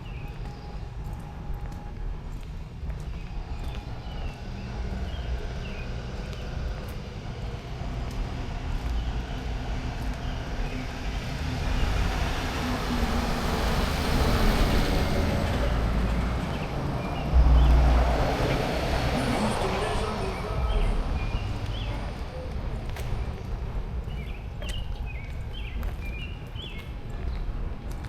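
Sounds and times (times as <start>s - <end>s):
car passing: 3.3s - 24.1s
loud low rumble: 14.2s - 24.4s.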